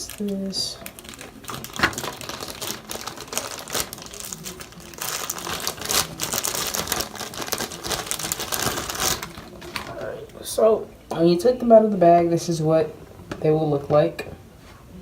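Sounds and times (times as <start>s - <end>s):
plastic bag crinkling: 0.0s - 10.3s.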